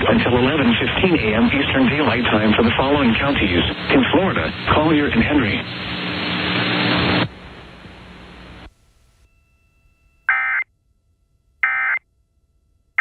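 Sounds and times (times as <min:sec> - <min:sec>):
radio hiss: 0:00.0 - 0:08.7.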